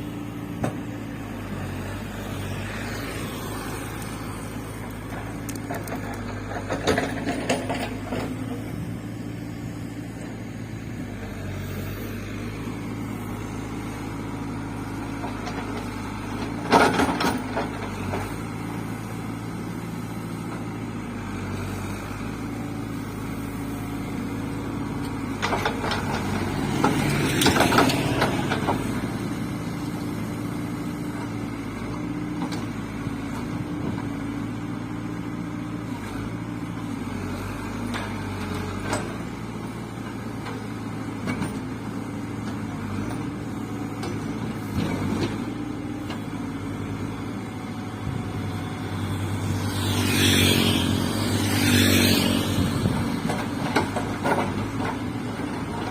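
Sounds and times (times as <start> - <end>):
backhoe diesel engine running: 0.0 - 55.9.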